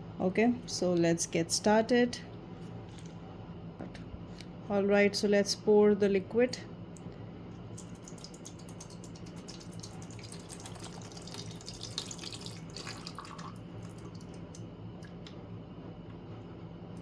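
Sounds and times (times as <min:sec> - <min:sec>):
liquid pouring into water tank: 0:07.7 - 0:15.2.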